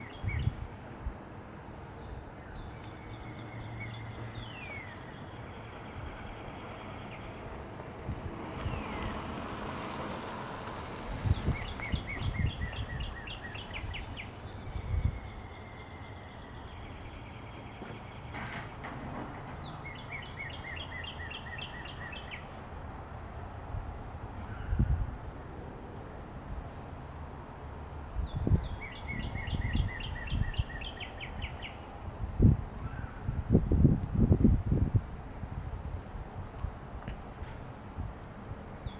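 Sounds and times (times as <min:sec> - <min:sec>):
distant jet rumble overhead: 0:00.0 - 0:38.9
wind thumps on microphone: 0:08.0 - 0:09.3, 0:10.7 - 0:15.3, 0:32.1 - 0:38.2
small birds chirping: 0:10.6 - 0:18.4.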